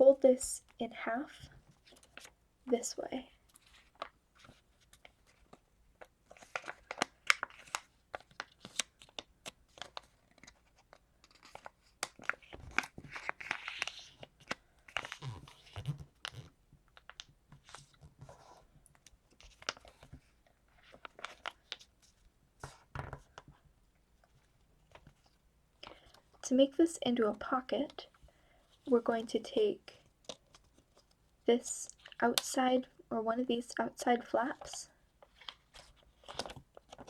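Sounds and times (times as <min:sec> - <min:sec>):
paper rustling and crackling: 0:03.4 - 0:23.6, 0:34.6 - 0:37.0.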